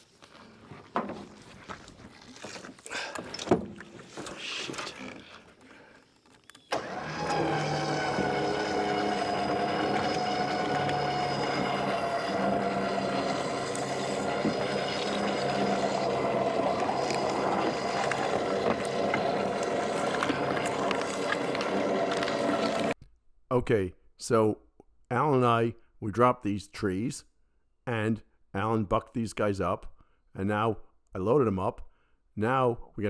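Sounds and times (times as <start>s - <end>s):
engine running: 6.8s - 23.0s.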